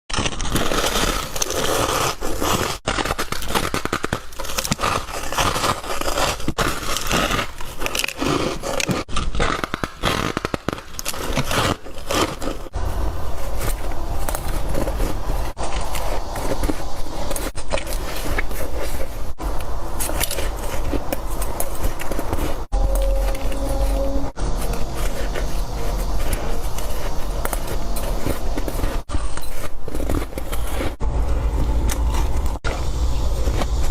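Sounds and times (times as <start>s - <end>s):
chewing crunchy ice: 0.1s - 33.9s
low rumble: 22.4s - 29.1s, 30.7s - 33.9s.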